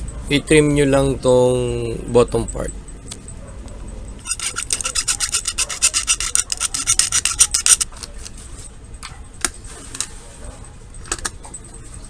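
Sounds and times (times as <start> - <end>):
plastic rasping strokes: 4.2 - 7.9.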